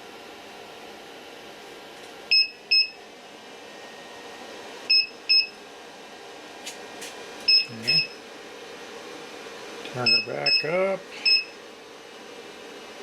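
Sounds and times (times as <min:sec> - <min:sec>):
fan hiss: 0:00.0 - 0:13.0
high alarm beeps: 0:02.3 - 0:03.0, 0:04.9 - 0:05.6, 0:07.5 - 0:08.2, 0:10.0 - 0:11.6.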